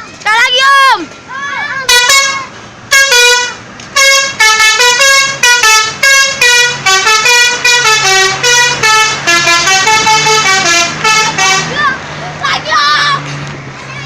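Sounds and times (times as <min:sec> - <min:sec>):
musical air horns playing tune: 0:01.9 - 0:11.8.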